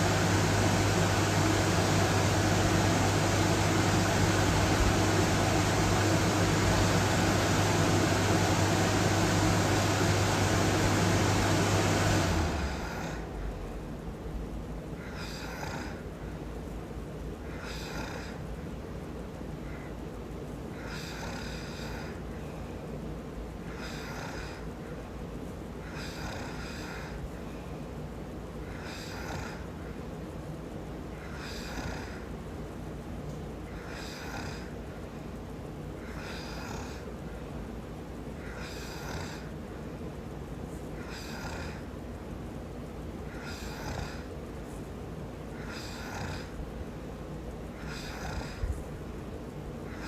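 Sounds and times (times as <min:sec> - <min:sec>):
steady low rumble: 0:00.0 - 0:11.0
machine rush with low hum: 0:00.0 - 0:50.0
man snoring: 0:15.1 - 0:16.0, 0:28.7 - 0:29.7, 0:31.3 - 0:32.2, 0:33.7 - 0:34.8, 0:36.1 - 0:37.1, 0:38.5 - 0:39.5, 0:41.0 - 0:41.9, 0:43.3 - 0:44.3, 0:45.6 - 0:46.6, 0:47.8 - 0:48.8.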